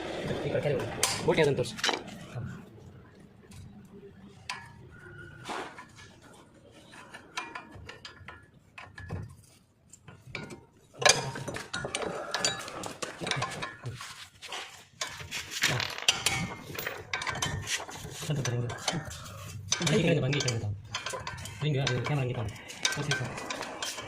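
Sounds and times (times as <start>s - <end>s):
rapid metallic clicks and knocks: 7.3s - 24.0s.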